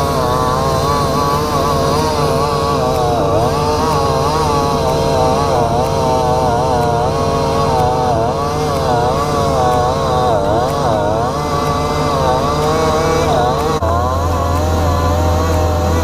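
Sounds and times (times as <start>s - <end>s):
chainsaw cutting wood: 0.0s - 16.0s
diesel engine humming: 0.0s - 16.0s.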